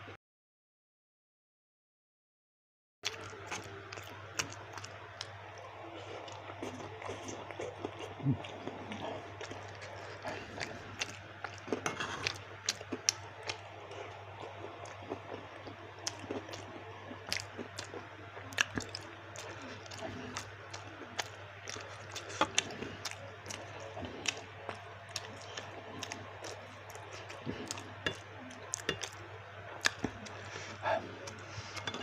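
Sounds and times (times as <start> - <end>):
faint steady hum: 3.0 - 32.0
wet chewing: 3.0 - 32.0.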